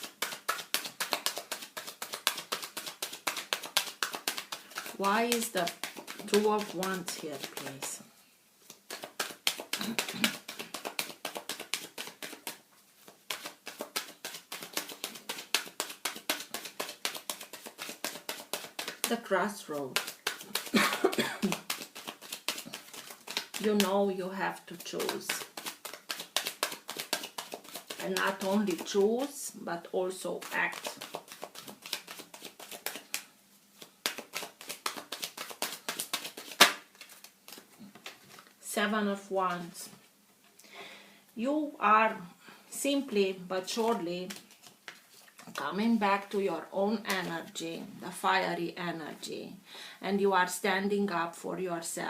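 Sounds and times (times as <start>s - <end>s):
cards shuffling: 0.0s - 8.0s, 8.7s - 29.4s, 30.2s - 38.6s, 43.8s - 46.4s, 47.0s - 47.6s.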